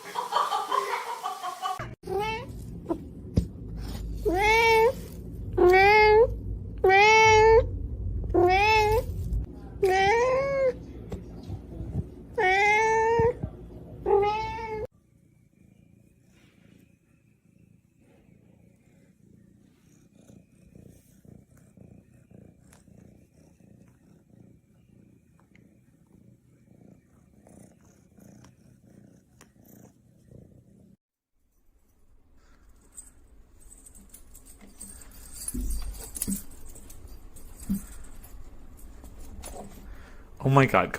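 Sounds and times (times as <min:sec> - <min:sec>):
faint cat purr: 0:14.7 - 0:31.0.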